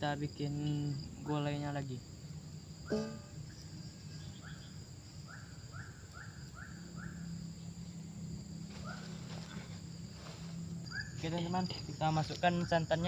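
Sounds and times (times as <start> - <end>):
insect chirring: 0.0 - 13.0
low steady hum: 0.0 - 13.0.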